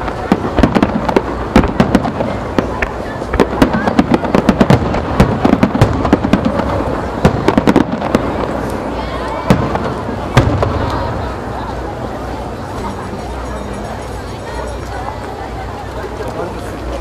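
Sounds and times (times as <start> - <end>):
fireworks bangs: 0.0 - 15.8.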